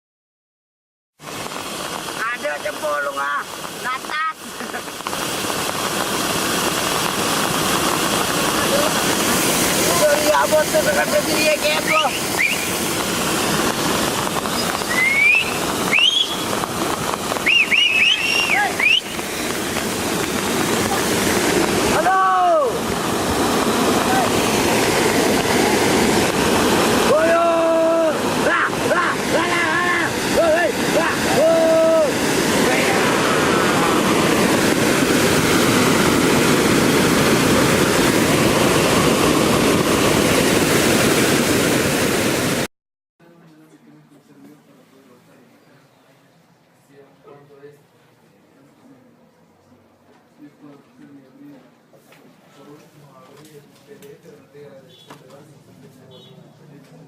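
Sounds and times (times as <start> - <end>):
flowing water rushing: 1.2 - 42.7
whistled gliding notes: 11.6 - 12.8, 14.5 - 16.6, 17.4 - 19.3.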